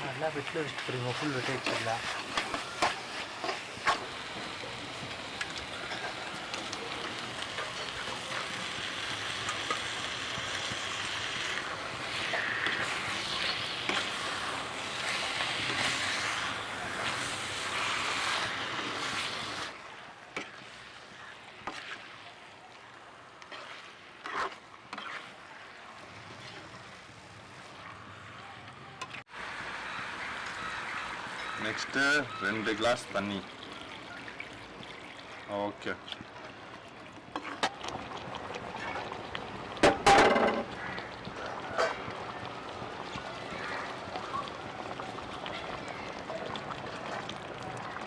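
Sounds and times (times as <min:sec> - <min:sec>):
paste sizzling in hot oil: 0:00.0 - 0:26.6.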